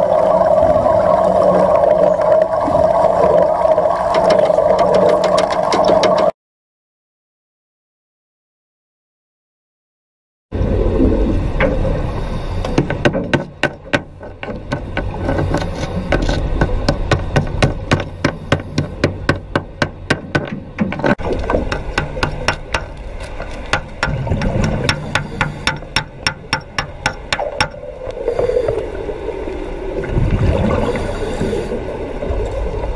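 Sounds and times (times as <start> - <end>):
low bubbling rumble: 10.5 - 12.2, 26.2 - 32.9.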